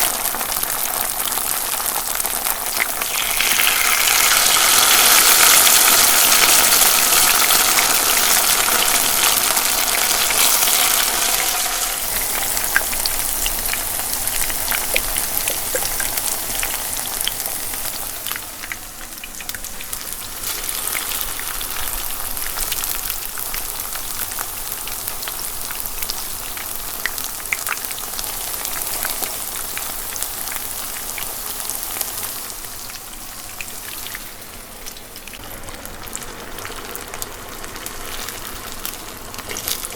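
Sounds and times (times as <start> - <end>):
deep-frying sizzle with pops: 0.0 - 39.9.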